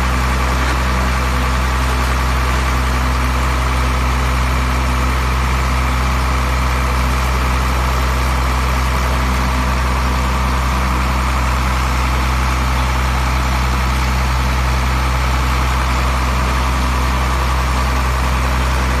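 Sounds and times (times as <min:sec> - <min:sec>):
wood crusher machine drone: 0:00.0 - 0:19.0.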